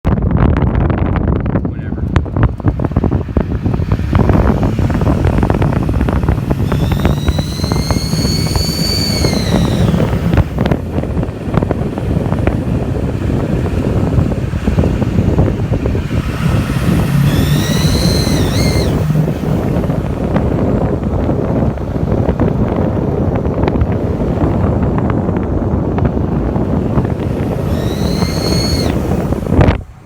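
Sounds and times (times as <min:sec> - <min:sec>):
diesel engine rumbling: 0:00.1 - 0:30.0
high-pitched wavering squeal: 0:04.3 - 0:10.6, 0:16.5 - 0:19.3, 0:27.6 - 0:29.5.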